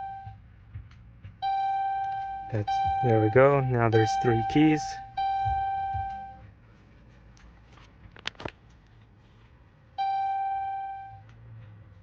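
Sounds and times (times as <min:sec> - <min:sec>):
electronic chime: 0:01.4 - 0:06.4.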